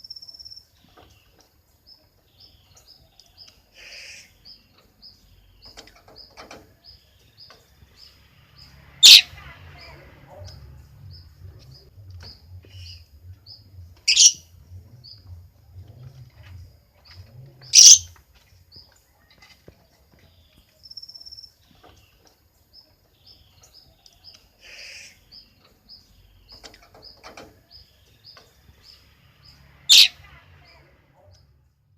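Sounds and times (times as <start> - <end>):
bird chirping: 0.0 - 31.9
bird screeching: 9.0 - 9.3, 14.1 - 14.4, 17.8 - 18.1, 29.9 - 30.2.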